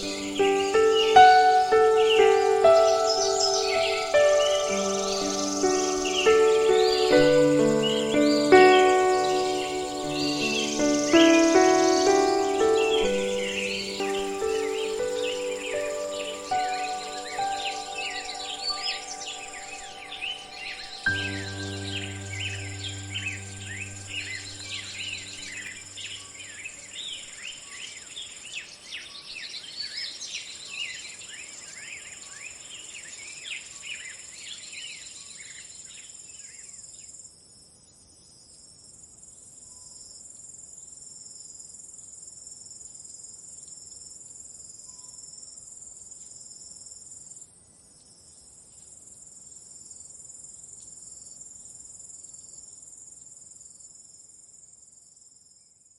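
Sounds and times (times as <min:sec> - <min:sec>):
insects chirring: 0:00.0 - 0:27.2
birds chirping: 0:00.0 - 0:27.3.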